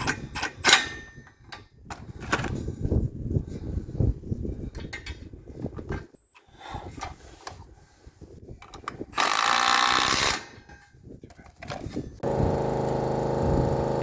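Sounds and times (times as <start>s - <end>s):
power drill running: 12.2s - 14.0s.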